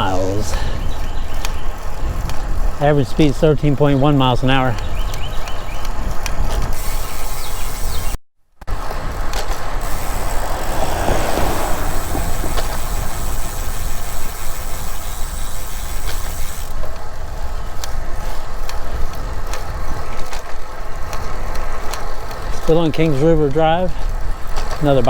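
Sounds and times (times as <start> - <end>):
bicycle tyre rumble: 0.0 - 25.0
wind rush: 8.7 - 15.5.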